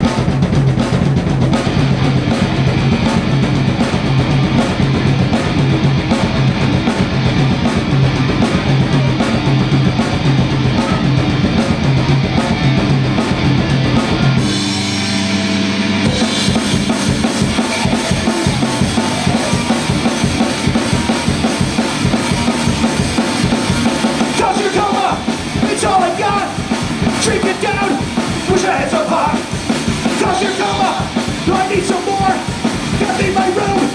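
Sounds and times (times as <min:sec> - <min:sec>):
fast drum beat: 0:00.0 - 0:33.9
punk rock band playing live: 0:00.0 - 0:33.9
person singing: 0:24.2 - 0:33.9.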